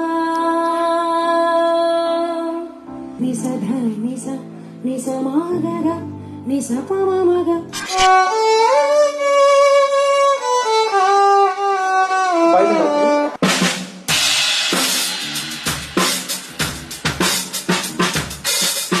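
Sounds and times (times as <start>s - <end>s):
violin sliding melody: 7.7s - 13.4s
drum kit beat: 12.9s - 19.0s.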